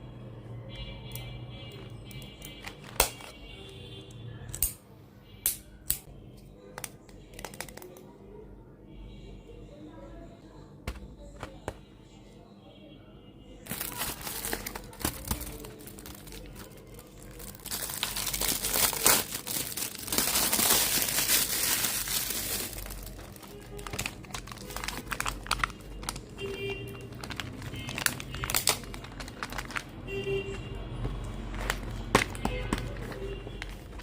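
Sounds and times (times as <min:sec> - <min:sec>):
packaging crinkling: 0:13.7 - 0:30.1, 0:31.0 - 0:34.0.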